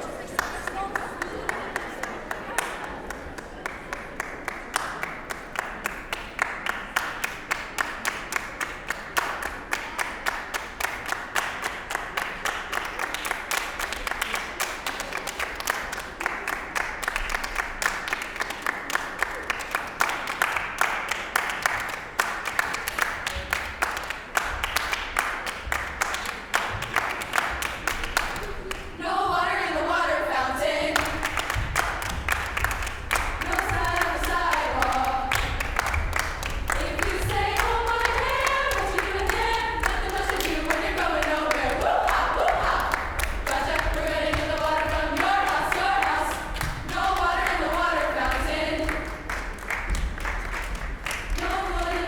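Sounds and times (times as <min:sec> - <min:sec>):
audience applauding: 0:00.0 - 0:29.0, 0:30.9 - 0:52.0
choir singing: 0:28.7 - 0:49.4, 0:51.2 - 0:52.0.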